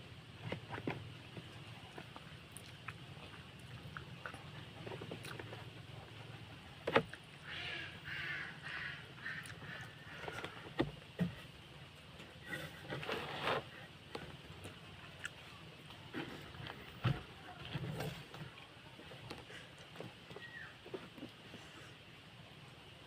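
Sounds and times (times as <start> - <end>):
low steady hum: 0.0 - 23.0
person chewing food: 1.6 - 5.7.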